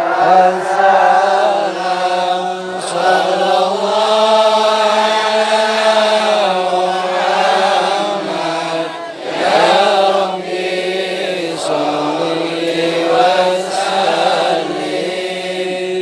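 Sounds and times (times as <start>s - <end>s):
man chanting devotional verses: 0.0s - 16.0s.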